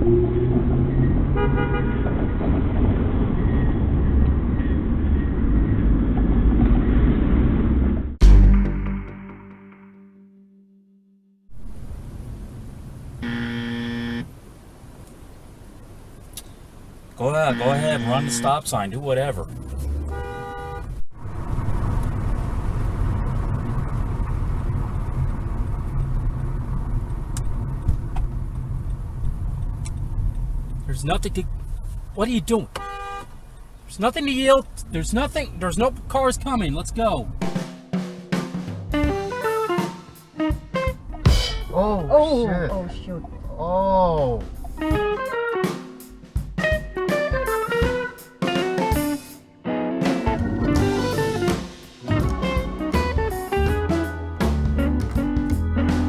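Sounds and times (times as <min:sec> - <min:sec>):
low rumble of traffic: 0:00.0 - 0:08.2, 0:11.5 - 0:37.6
car engine and road noise: 0:00.0 - 0:08.3, 0:11.5 - 0:37.6, 0:40.2 - 0:45.5, 0:50.6 - 0:56.0
car horn honk: 0:01.4 - 0:02.2, 0:13.2 - 0:14.3, 0:17.3 - 0:18.6, 0:20.1 - 0:21.0, 0:32.8 - 0:33.3.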